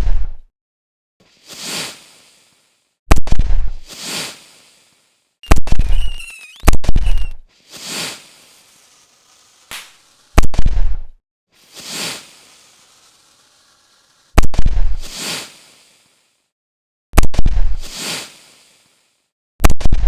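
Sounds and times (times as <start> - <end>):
firework crackling hiss: 1.4 - 2.8, 3.8 - 16.5, 17.8 - 19.3
small pop: 9.7 - 11.1.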